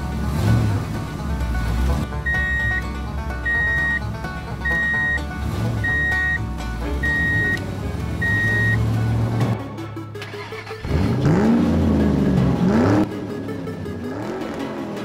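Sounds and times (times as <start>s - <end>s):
background music: 0.0s - 15.0s
vehicle engine revving: 0.0s - 15.0s
short electronic beep: 2.3s - 2.8s, 3.4s - 4.0s, 4.6s - 5.2s, 5.8s - 6.4s, 7.0s - 7.6s, 8.2s - 8.8s.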